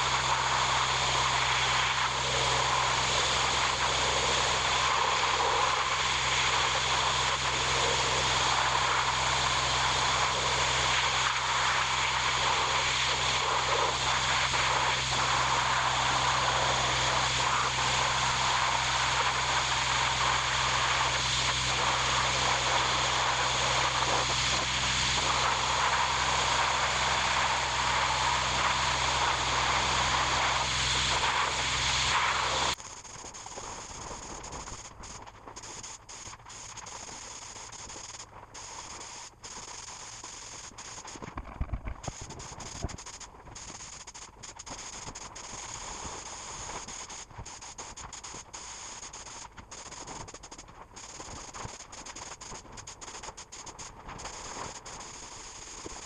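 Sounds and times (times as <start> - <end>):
tractor engine running: 0.0 - 32.8.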